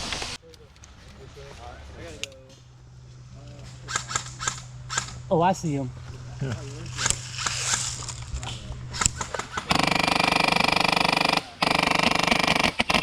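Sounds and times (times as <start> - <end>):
airsoft gun firing full auto: 3.9 - 5.2, 6.9 - 8.0, 8.9 - 13.0.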